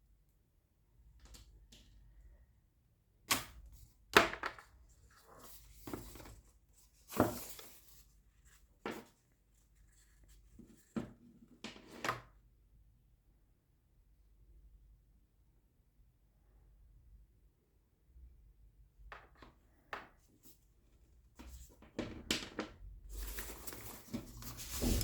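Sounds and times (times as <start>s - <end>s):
packaging rustling: 23.1s - 25.0s.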